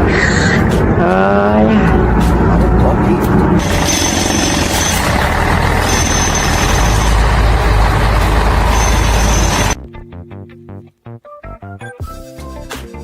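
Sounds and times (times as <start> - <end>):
music: 0.0 - 3.7, 8.8 - 13.0
heavy machinery engine rumble: 0.0 - 9.8
high machinery whine: 2.2 - 9.8.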